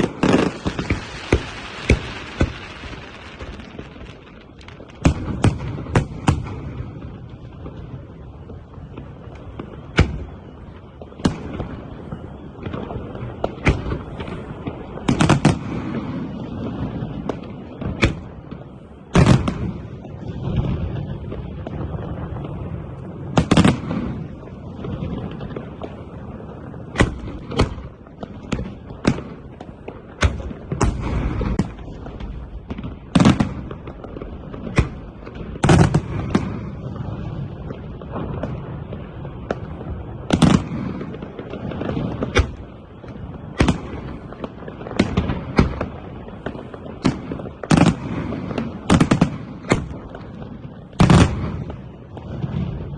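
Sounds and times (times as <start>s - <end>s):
fireworks shells bursting: 0.0s - 5.6s
fireworks rumble and crackle: 0.0s - 52.9s.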